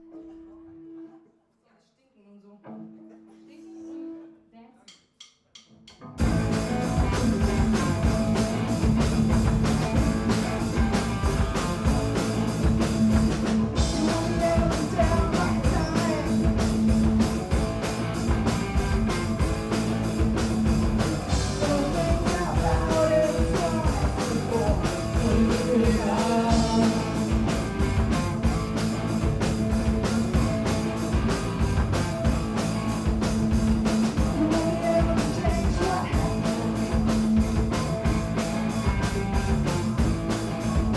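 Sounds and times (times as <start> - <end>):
punk band playing live: 6.2 - 40.9
female vocal singing: 34.3 - 36.4.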